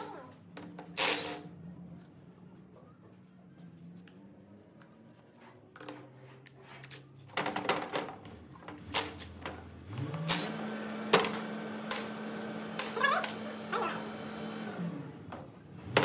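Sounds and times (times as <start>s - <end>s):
machine hum: 9.8s - 16.0s.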